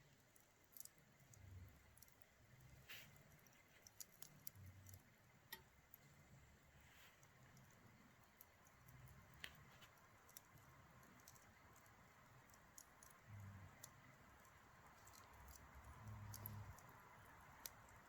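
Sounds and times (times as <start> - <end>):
campfire crackling: 7.2 - 18.0.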